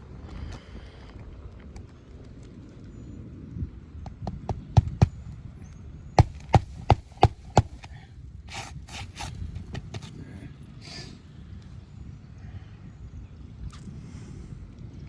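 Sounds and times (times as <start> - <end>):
tool knocking on roof shingles: 4.5 - 5.2, 6.2 - 10.1
tool scraping shingles: 6.2 - 10.1.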